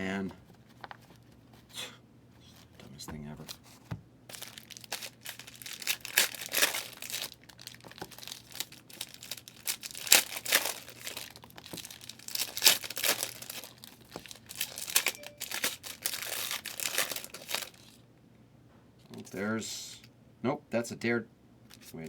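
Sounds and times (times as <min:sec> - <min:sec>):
cards being handled: 0:02.4 - 0:08.7
foil wrappers tearing and crinkling: 0:04.3 - 0:18.0.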